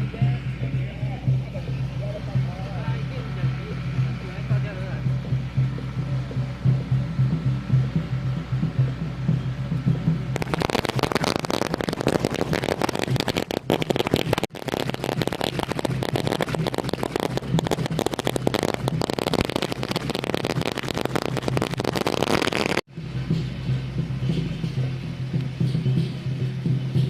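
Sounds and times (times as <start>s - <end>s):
firecrackers crackling: 10.4s - 22.9s.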